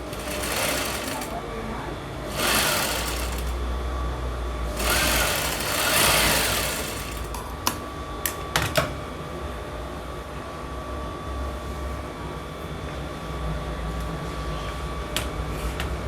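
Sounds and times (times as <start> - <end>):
sewing machine stitching: 0.0 - 1.4, 2.3 - 3.6, 4.7 - 7.4.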